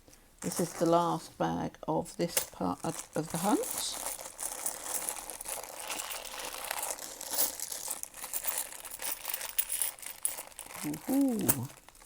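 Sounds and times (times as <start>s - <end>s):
plastic bag crinkling: 2.8s - 12.0s
coins clicking: 3.4s - 11.8s.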